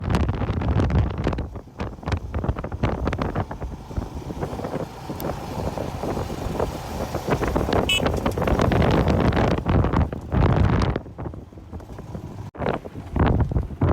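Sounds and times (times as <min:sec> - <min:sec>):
motorbike rumble: 0:00.0 - 0:13.9
wind buffeting microphone: 0:00.0 - 0:13.9.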